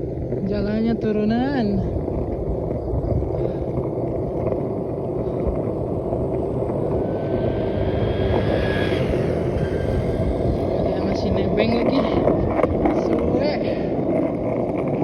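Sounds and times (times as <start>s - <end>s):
skateboard wheels rolling on asphalt: 0.0s - 15.0s
faint high whine: 5.2s - 11.6s.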